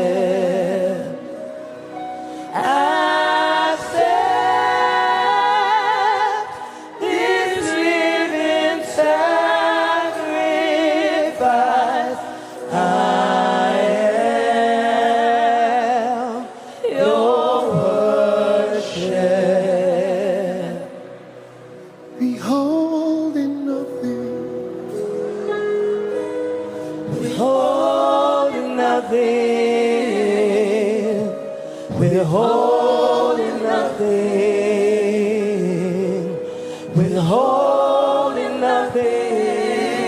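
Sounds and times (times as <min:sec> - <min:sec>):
gospel choir singing: 0:00.0 - 0:40.0
singers breathing: 0:02.2 - 0:02.5, 0:06.6 - 0:07.0, 0:31.6 - 0:31.9, 0:36.4 - 0:37.0.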